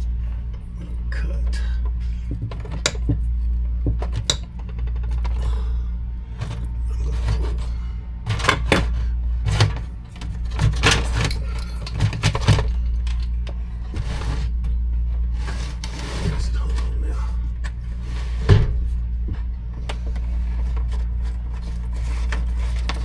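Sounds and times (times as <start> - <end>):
steady low hum: 0.0 - 23.0
metallic clicks and rattles of tools: 8.3 - 13.6.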